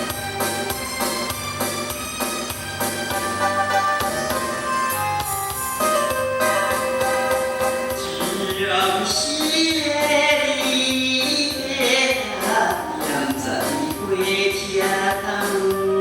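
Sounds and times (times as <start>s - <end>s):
keyboard backing track: 0.0s - 16.0s
man singing: 7.9s - 16.0s.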